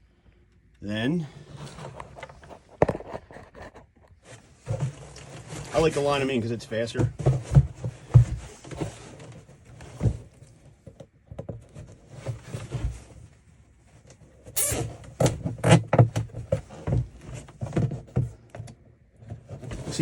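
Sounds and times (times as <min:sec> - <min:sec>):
plastic knocks and thumps: 0:07.0 - 0:13.0, 0:15.2 - 0:20.0.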